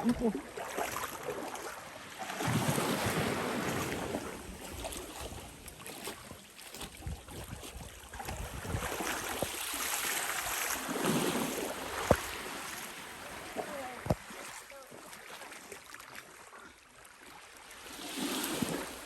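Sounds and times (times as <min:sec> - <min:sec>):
sea water splashing: 0:00.0 - 0:19.0
wind buffeting microphone: 0:07.0 - 0:09.6.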